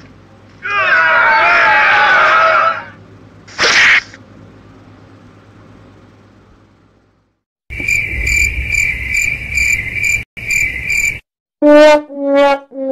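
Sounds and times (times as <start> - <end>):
crickets chirping: 7.7 - 11.3.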